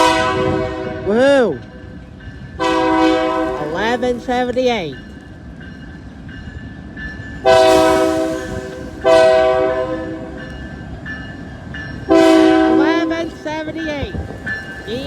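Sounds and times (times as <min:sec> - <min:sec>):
locomotive horn blasts: 0:00.0 - 0:01.1, 0:02.6 - 0:03.8, 0:07.4 - 0:10.4, 0:12.1 - 0:13.4
low rumble of passing train: 0:00.0 - 0:15.0.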